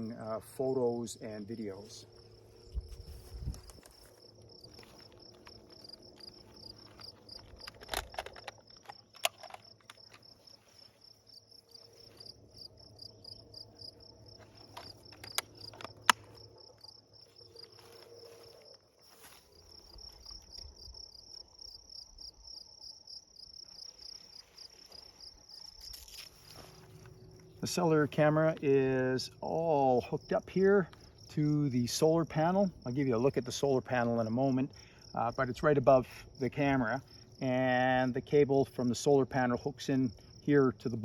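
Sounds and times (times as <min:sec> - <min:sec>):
insects chirping: 0:00.0 - 0:41.0
clicks and knocks from handling: 0:07.0 - 0:10.3.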